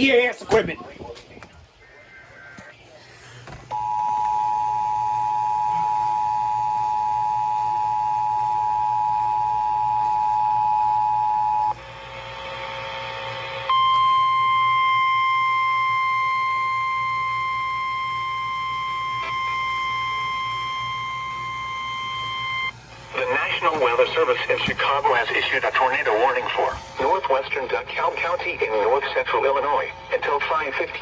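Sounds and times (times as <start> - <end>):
single-tone warning alarm: 3.7 - 27.1.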